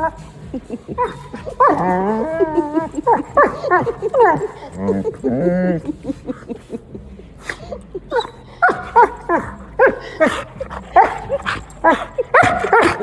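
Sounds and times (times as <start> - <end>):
puppy yipping and whining: 1.2 - 5.2, 7.6 - 13.0.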